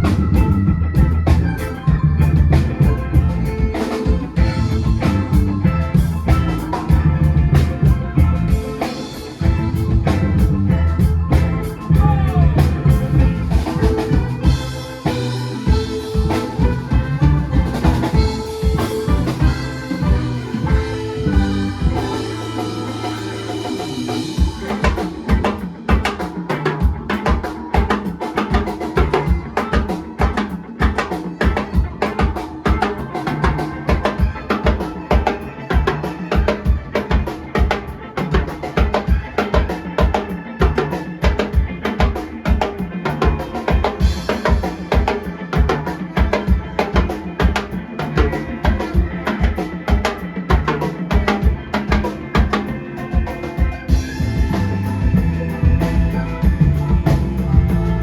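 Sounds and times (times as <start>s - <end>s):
heavy bass line: 0.0s - 3.7s, 4.4s - 8.6s, 9.4s - 24.4s, 53.9s - 58.0s
driving drum groove: 0.0s - 58.0s
live band playing: 0.0s - 58.0s.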